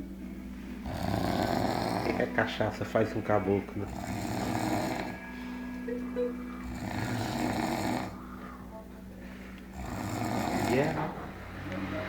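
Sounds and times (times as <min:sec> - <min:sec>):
pet snoring: 0:00.8 - 0:02.3, 0:03.8 - 0:05.3, 0:06.5 - 0:08.4, 0:09.7 - 0:11.2.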